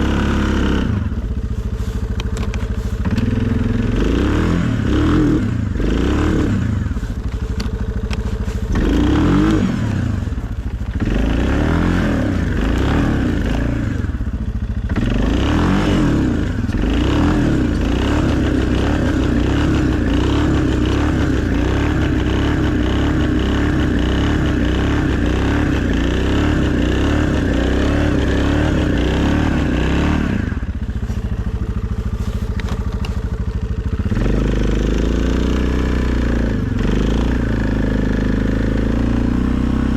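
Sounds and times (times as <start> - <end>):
quad bike engine revving: 0.0 - 39.9.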